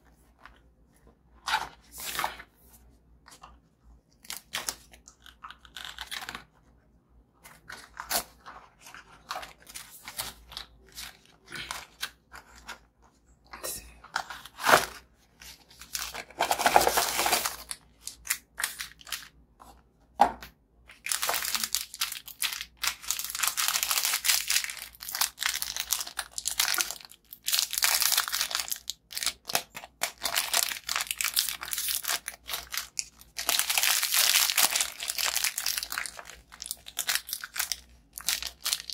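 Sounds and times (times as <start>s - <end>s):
plastic wrapper crinkling: 15.7s - 19.4s, 20.9s - 38.9s
plastic wrapper tearing: 15.8s - 19.3s, 20.9s - 38.9s.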